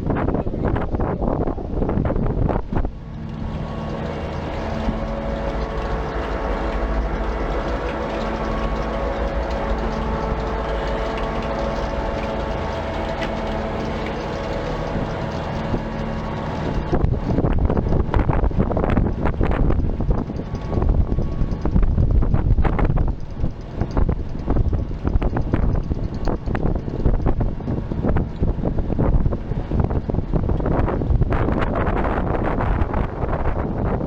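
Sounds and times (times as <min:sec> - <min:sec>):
wind buffeting microphone: 0:00.0 - 0:34.0
motor humming: 0:00.4 - 0:34.0.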